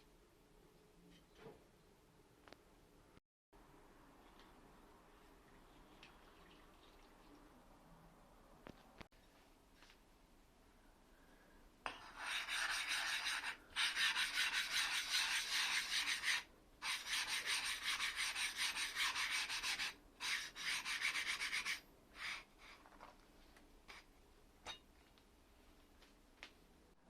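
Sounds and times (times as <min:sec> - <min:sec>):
blade scraping on sharpening stone: 0:11.9 - 0:21.8.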